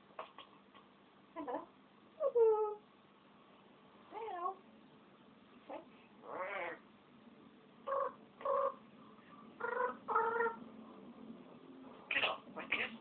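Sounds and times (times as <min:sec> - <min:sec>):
parrot meow-like calls: 0:05.7 - 0:06.8, 0:12.1 - 0:13.0.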